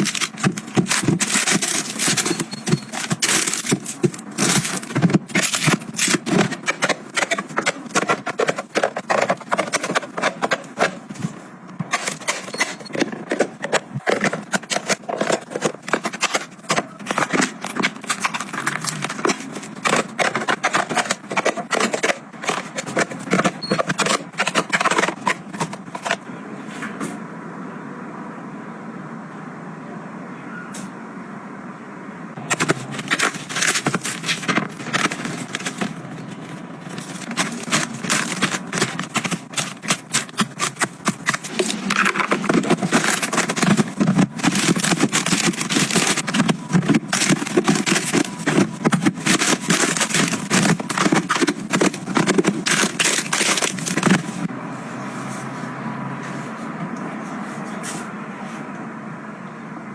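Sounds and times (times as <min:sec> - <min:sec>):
household items clicking and knocking: 0:00.0 - 0:26.2, 0:32.4 - 0:54.5.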